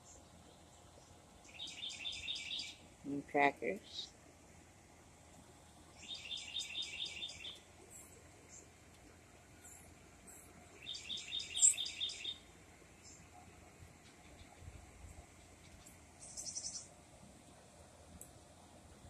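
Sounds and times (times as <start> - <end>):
songbird singing: 0.0 - 4.2, 5.8 - 17.0
faint high bird chips: 9.6 - 12.4.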